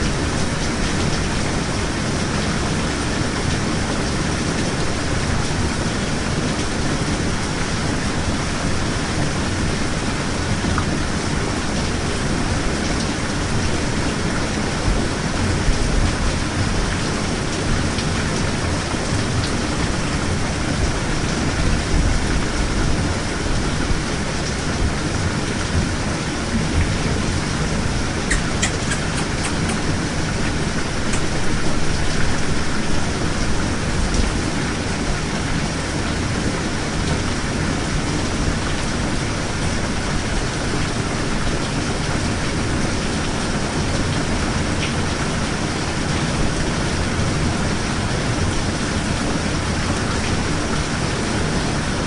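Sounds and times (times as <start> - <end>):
steady rain hiss: 0.0 - 52.0.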